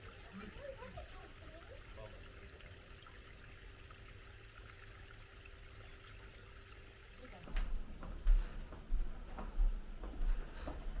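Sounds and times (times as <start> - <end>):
faint wavering sounds: 0.0 - 7.1
faint running water: 0.0 - 11.0.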